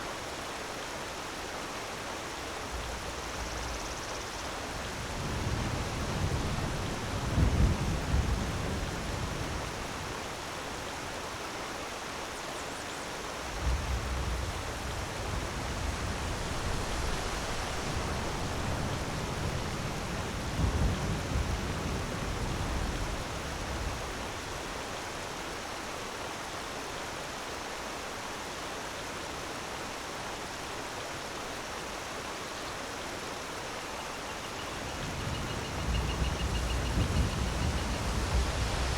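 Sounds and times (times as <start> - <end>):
waterfall rushing: 15.0 - 20.3, 35.7 - 38.9.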